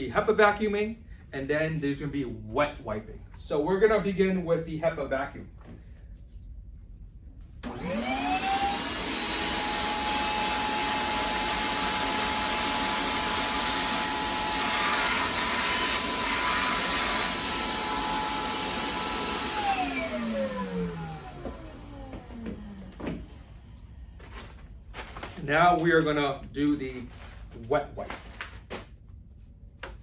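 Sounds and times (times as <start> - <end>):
vacuum cleaner motor whine: 7.6 - 25.1.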